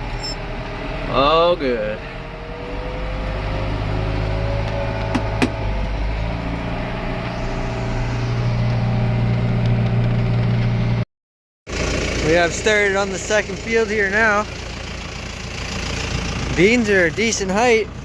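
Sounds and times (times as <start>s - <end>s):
vehicle engine pulling away: 0.0s - 11.0s, 11.7s - 18.0s
faint rising whine: 5.8s - 9.9s.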